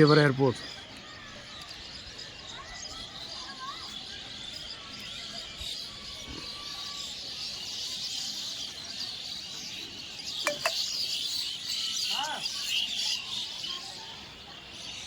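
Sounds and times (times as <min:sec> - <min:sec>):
birds chirping: 0:00.0 - 0:15.0
sharp falling bird calls: 0:05.8 - 0:15.0.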